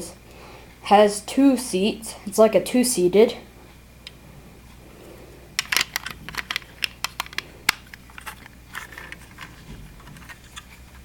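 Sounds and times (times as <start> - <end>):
plastic toy bricks clicking: 5.6 - 10.7.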